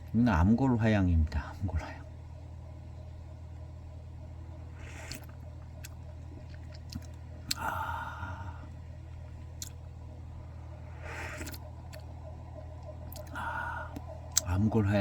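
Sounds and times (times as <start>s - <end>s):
low steady hum: 0.0s - 15.0s
person breathing: 4.7s - 5.3s, 7.5s - 8.8s, 10.4s - 11.6s, 13.1s - 14.5s
slurping sip of tea: 4.8s - 5.4s, 11.0s - 11.6s.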